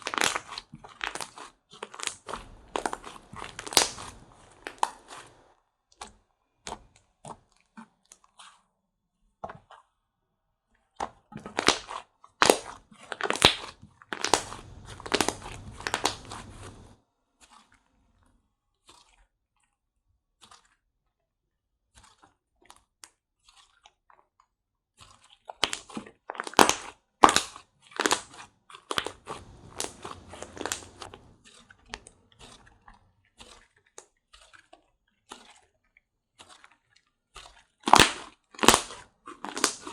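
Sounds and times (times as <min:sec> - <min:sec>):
slime clicking and popping: 0:00.0 - 0:06.1, 0:11.0 - 0:16.9, 0:25.6 - 0:31.4, 0:37.8 - 0:39.9.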